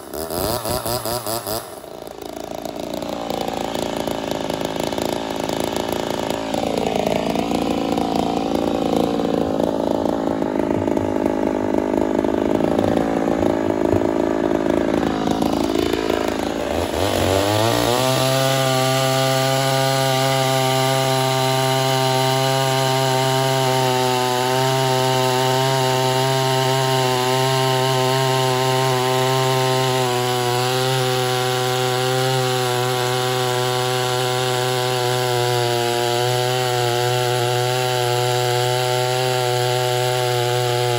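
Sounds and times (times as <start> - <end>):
chainsaw running hard: 0.0 - 40.9.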